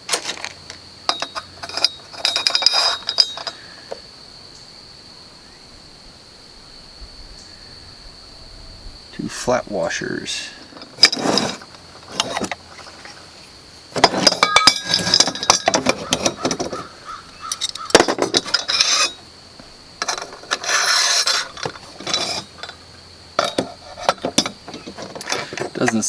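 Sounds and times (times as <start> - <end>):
metal hardware clinking and scraping: 0.1 - 4.0, 9.4 - 13.3, 13.9 - 19.2, 20.0 - 26.0.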